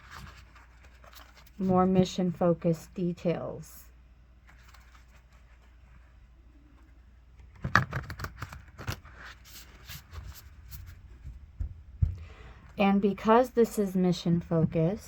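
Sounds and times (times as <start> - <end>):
cards being shuffled: 7.4 - 11.0.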